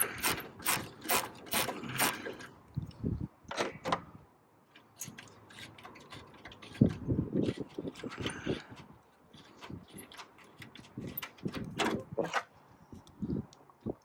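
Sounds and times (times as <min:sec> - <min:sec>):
hand tool clicking: 0:00.0 - 0:02.3.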